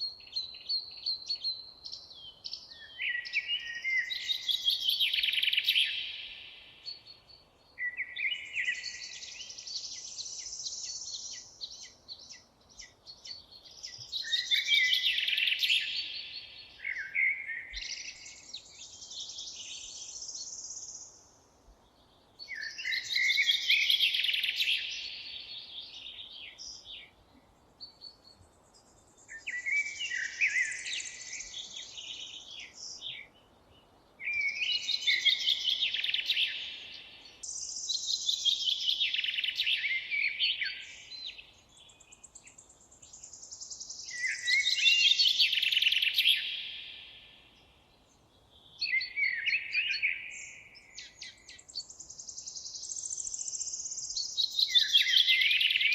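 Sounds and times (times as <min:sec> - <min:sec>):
songbird singing trills: 0:00.0 - 0:55.9.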